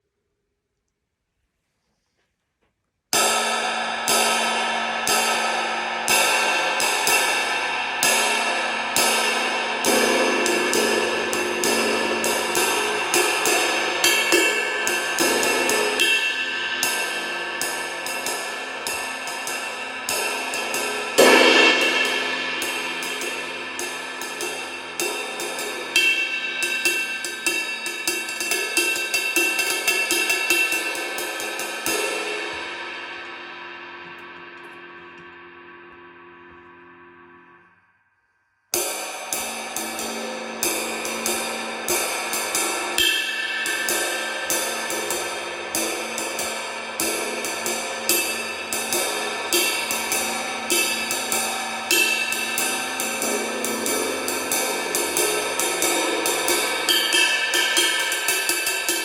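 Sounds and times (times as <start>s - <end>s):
ride cymbal being played: 3.2s - 34.4s, 38.8s - 59.0s.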